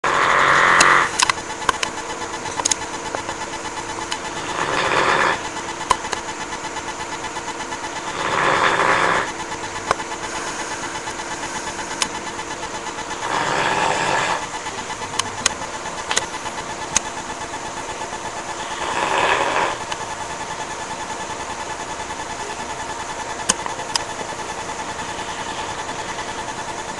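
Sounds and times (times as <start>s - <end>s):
dog snoring: 0.0s - 1.1s, 4.3s - 5.5s, 8.0s - 9.4s, 13.0s - 14.6s, 18.5s - 19.9s
steady hum: 0.0s - 26.9s
sharp clicks: 0.8s - 3.3s, 4.0s - 4.3s, 5.8s - 6.4s, 11.9s - 12.5s, 14.7s - 17.2s, 19.9s - 20.1s, 23.4s - 24.3s.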